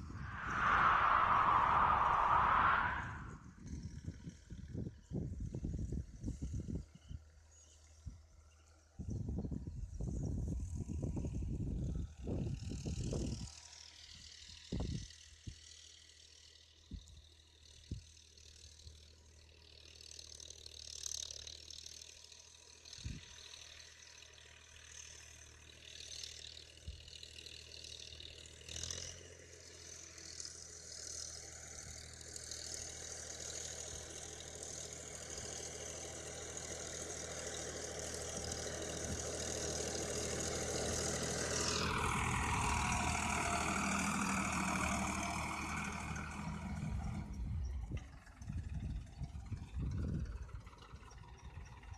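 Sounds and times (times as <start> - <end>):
tractor diesel engine running: 32.3 - 51.9.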